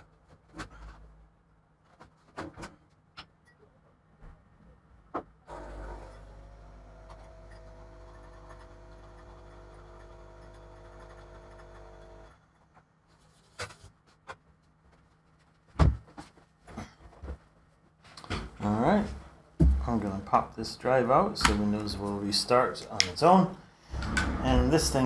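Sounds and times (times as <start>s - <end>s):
machine hum: 18.4s - 25.0s.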